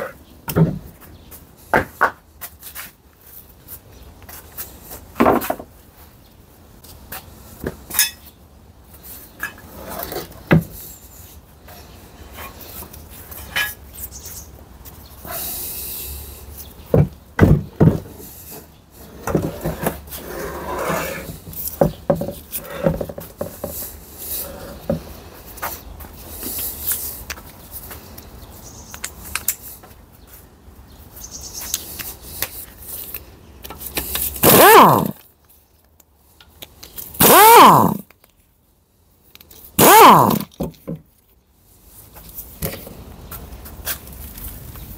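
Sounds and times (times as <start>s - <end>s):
metal tools and parts clicking: 7.9s - 8.3s
parts rubbing: 33.0s - 35.2s, 37.0s - 38.1s, 39.8s - 40.6s
hard parts knocking and clinking: 34.4s - 35.2s, 37.2s - 38.1s, 39.8s - 41.0s
loud noisy burst: 34.4s - 35.2s, 37.2s - 38.0s, 39.8s - 40.4s.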